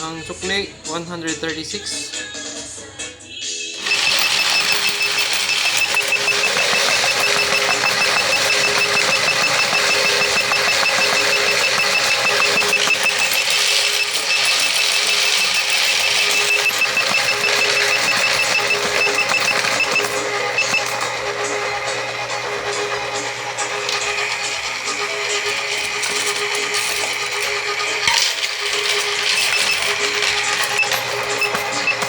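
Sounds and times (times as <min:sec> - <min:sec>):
coin hopper motor whir: 0:03.8 - 0:32.0
rapid clicks of coins: 0:03.8 - 0:32.0.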